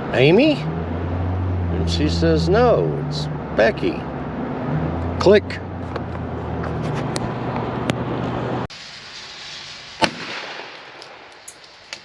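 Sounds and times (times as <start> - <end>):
car engine running: 0.0 - 8.7
shotgun blast with echo: 10.0 - 10.8.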